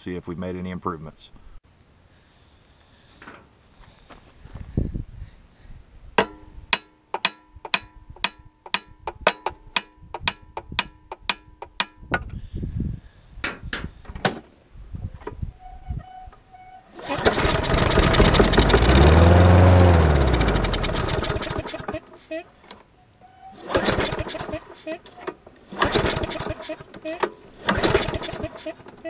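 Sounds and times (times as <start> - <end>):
lawn mower engine running: 16.9 - 22.4, 23.6 - 29.0.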